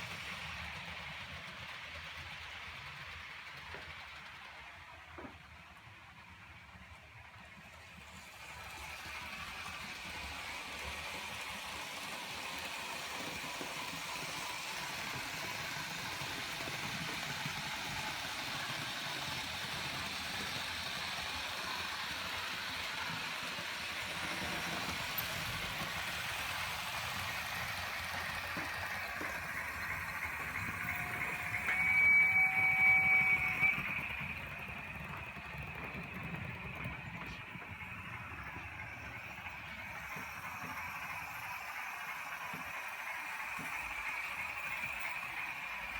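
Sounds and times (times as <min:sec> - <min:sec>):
model steam locomotive running sound: 0:00.0 - 0:45.9
high brake squeal: 0:28.0 - 0:35.2.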